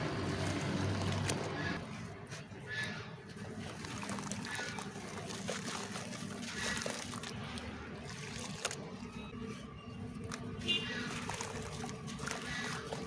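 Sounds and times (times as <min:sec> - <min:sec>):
dirt fizzing in water: 0:03.4 - 0:13.0
small splashes: 0:03.4 - 0:13.0.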